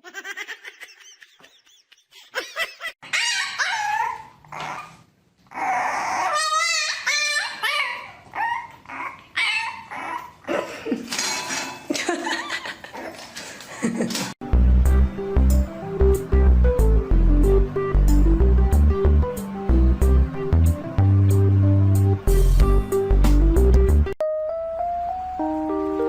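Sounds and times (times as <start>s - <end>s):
dog whimpering and yipping: 3.0s - 10.5s.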